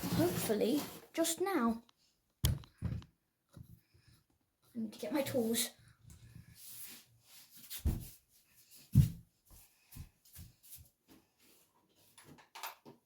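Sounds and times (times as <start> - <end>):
knocks and thumps of handled objects: 2.4 - 3.7.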